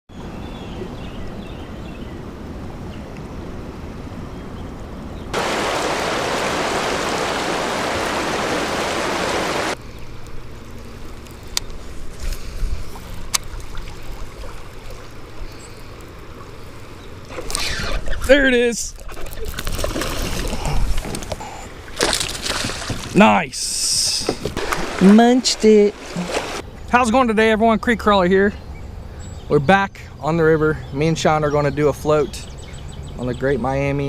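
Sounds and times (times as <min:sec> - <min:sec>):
rushing water: 0:05.3 - 0:09.8, 0:12.8 - 0:18.7, 0:19.5 - 0:26.6
river water flowing: 0:05.3 - 0:17.6, 0:19.6 - 0:26.7.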